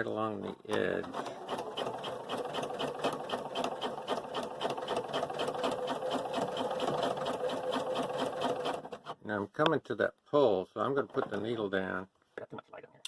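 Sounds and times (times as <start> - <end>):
sewing machine running: 0.8 - 9.2.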